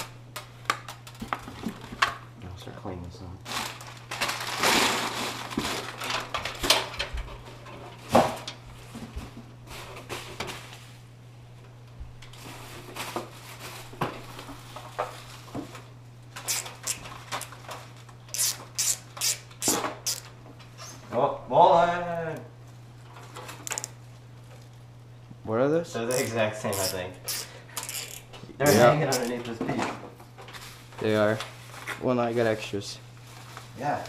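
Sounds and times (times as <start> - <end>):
packaging rustling: 3.4 - 6.6.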